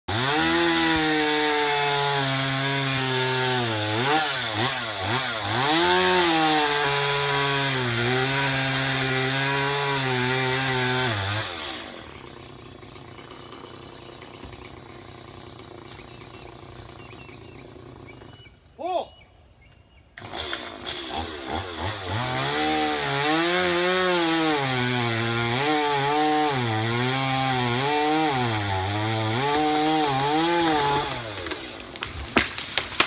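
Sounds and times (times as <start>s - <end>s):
two-stroke chainsaw revving: 0.1s - 18.4s, 20.2s - 33.0s.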